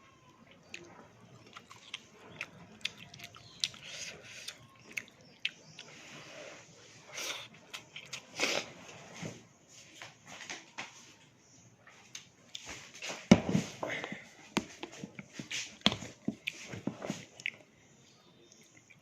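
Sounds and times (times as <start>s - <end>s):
person chewing: 0.2s - 6.1s, 7.1s - 8.8s, 13.4s - 17.7s.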